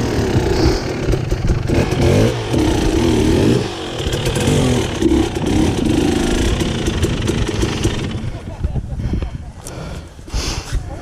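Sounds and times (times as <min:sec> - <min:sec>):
dirt bike engine revving: 0:00.0 - 0:08.6.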